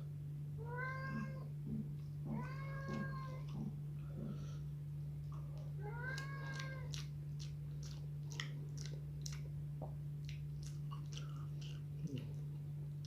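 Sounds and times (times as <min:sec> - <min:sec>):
steady low hum: 0:00.0 - 0:13.0
person chewing food: 0:05.2 - 0:13.0
wet mouth clicks and smacks: 0:05.3 - 0:12.5.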